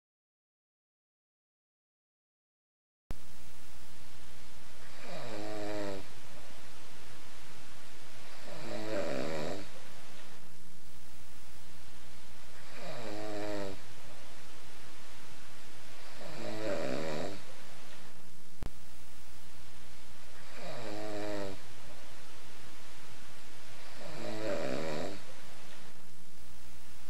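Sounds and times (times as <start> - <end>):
low hum: 3.1 - 5.0, 6.0 - 8.5, 9.7 - 12.8, 13.8 - 16.2, 17.4 - 20.6, 21.6 - 24.0, 25.2 - 27.0
background hiss: 3.1 - 27.0
rasping snores: 4.9 - 6.1, 8.2 - 9.7, 12.6 - 13.8, 16.0 - 17.5, 20.4 - 21.6, 23.8 - 25.3.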